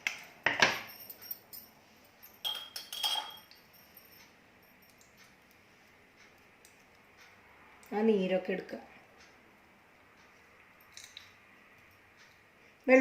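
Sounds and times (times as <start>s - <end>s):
kitchen utensils clinking: 0.1s - 1.7s, 2.3s - 4.2s.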